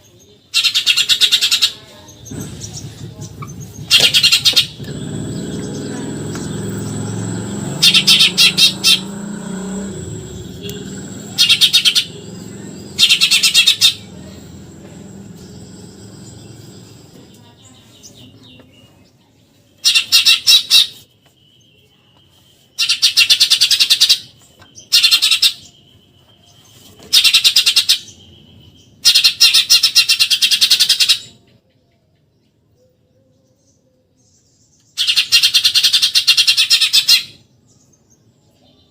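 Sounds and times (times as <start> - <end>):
sparrow buzzy chattering song: 0.0 - 38.9
low rumble: 2.3 - 7.9, 9.0 - 17.4.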